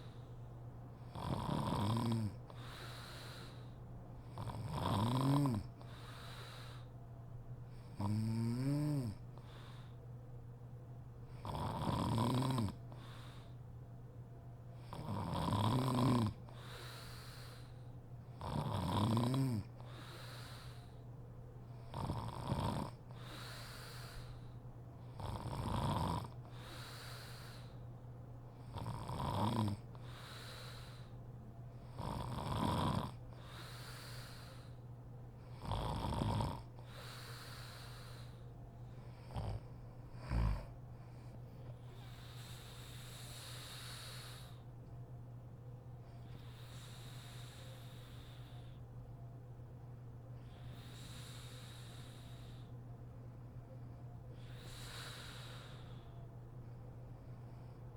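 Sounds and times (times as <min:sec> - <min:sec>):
soft breaths: 0:00.0 - 0:25.6, 0:26.2 - 0:57.9
woman snoring: 0:01.1 - 0:03.0, 0:04.3 - 0:05.9, 0:07.8 - 0:09.2, 0:11.4 - 0:12.8, 0:14.9 - 0:17.6, 0:18.4 - 0:20.9, 0:21.9 - 0:24.3, 0:25.1 - 0:27.7, 0:28.6 - 0:31.1, 0:31.9 - 0:34.8, 0:35.5 - 0:38.3, 0:39.2 - 0:39.6, 0:40.2 - 0:40.7.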